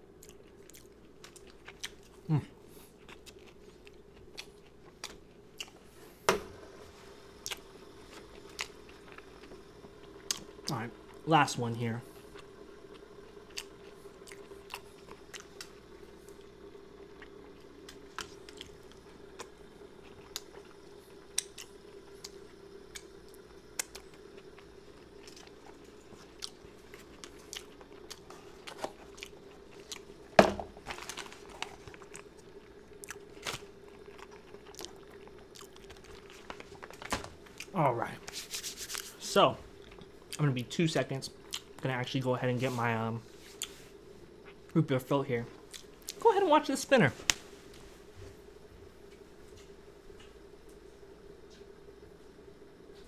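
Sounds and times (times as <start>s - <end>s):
person chewing food: 0.0s - 6.2s, 7.2s - 11.2s, 12.1s - 40.4s, 41.4s - 41.8s, 43.3s - 44.7s, 45.5s - 46.2s.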